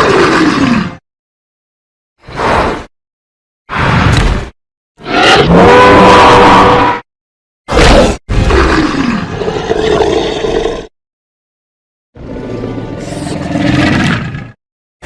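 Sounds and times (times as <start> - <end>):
dinosaur roaring: 5.0 - 7.0, 7.7 - 10.9.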